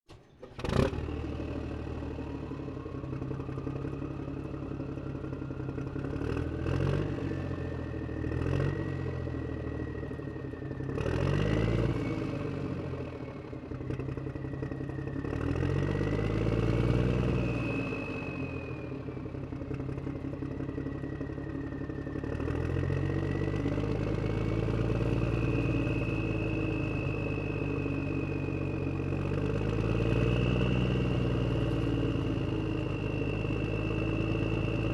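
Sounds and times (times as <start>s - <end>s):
vehicle engine starting and revving: 0.1s - 4.0s, 6.0s - 7.6s, 10.8s - 13.2s
vehicle driving away: 0.1s - 34.9s.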